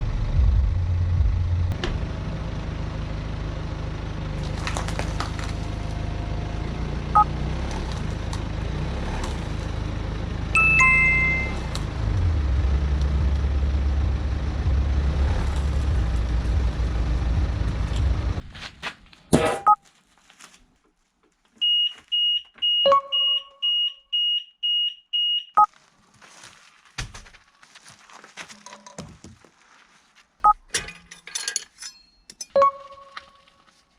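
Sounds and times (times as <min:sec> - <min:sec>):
music with heavy bass: 0:00.0 - 0:01.8, 0:10.6 - 0:18.4
short high beeps: 0:10.6 - 0:11.6, 0:21.6 - 0:25.7, 0:32.6 - 0:33.5
two-note chime: 0:10.6 - 0:11.7, 0:22.9 - 0:23.6.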